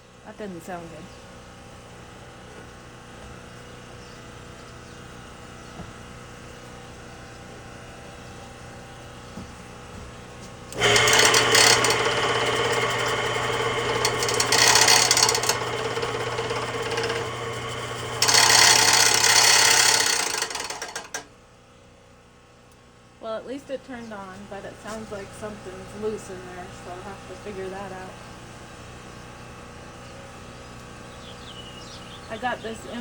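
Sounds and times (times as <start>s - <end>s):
lathe motor rasping rattle: 10.7s - 21.3s.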